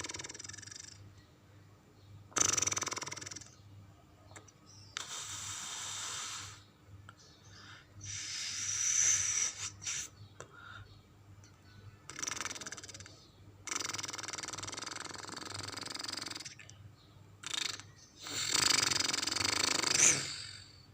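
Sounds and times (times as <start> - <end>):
breathy hiss-like creature calls: 2.4 - 3.5, 5.0 - 6.7, 8.0 - 10.2, 13.7 - 16.6, 17.4 - 20.8
creature snorts: 17.4 - 20.8.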